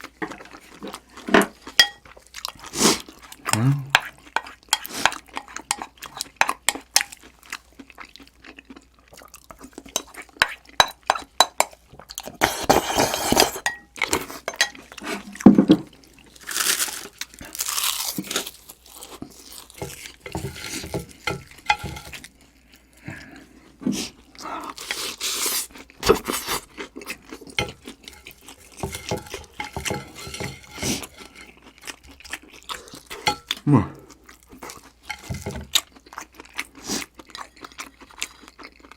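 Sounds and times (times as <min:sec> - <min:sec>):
crunchy bites and chewing: 0:16.3 - 0:20.1
utensils clicking on dishes: 0:19.8 - 0:22.2, 0:27.6 - 0:31.5.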